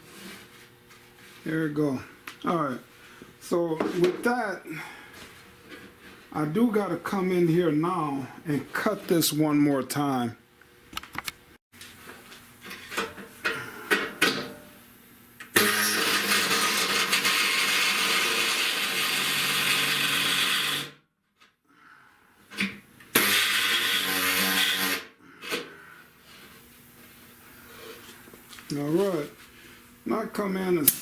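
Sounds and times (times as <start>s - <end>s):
saw cutting sheet steel: 15.6s - 21.0s, 23.1s - 25.1s.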